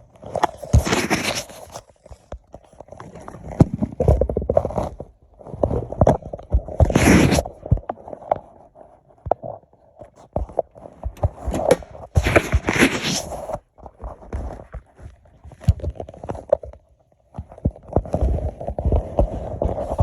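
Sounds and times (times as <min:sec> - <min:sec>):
hands and tools scraping: 0:00.2 - 0:06.2, 0:06.8 - 0:07.5, 0:10.2 - 0:16.8.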